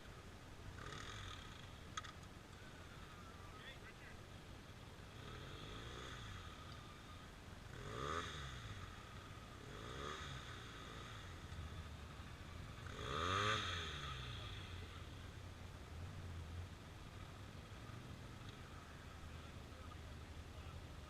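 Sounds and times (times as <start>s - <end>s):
atv engine revving: 0.0s - 3.6s, 5.0s - 21.0s.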